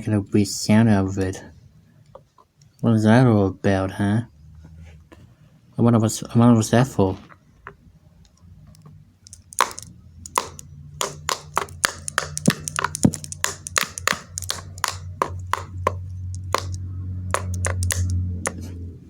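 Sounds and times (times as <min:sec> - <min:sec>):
sharp taps and clicks: 0:09.2 - 0:18.7.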